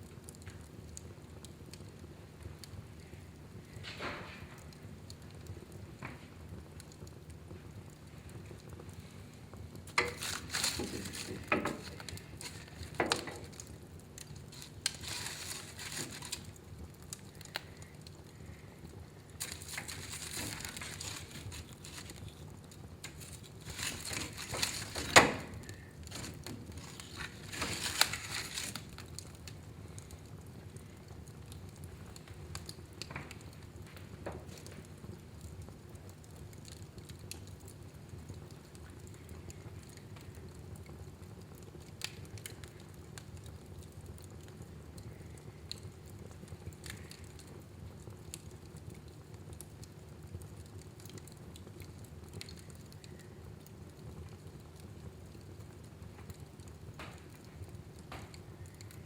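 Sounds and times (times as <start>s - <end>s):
fire crackling and popping: 0.0s - 59.0s
fire hissing: 0.4s - 48.5s.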